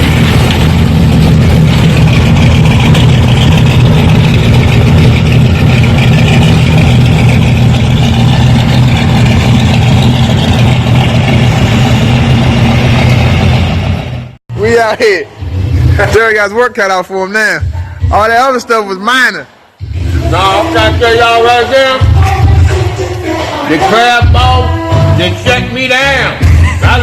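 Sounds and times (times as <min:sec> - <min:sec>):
car engine idling: 0:00.0 - 0:16.6.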